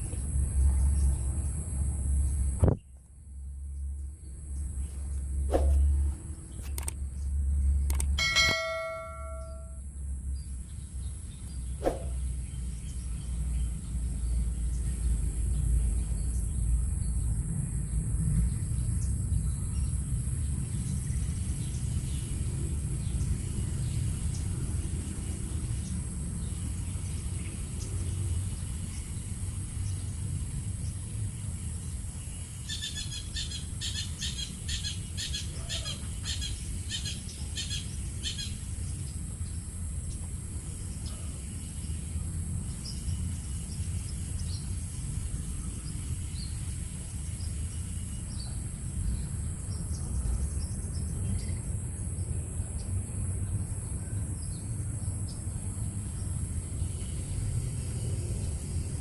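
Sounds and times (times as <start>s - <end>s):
high insect drone: 0.0s - 59.0s.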